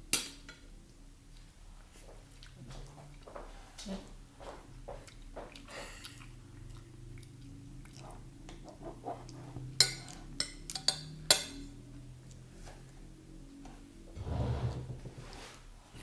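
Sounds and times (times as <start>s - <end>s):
chewing and eating noises: 0.7s - 14.1s
cutlery clinking on a plate: 9.5s - 11.8s.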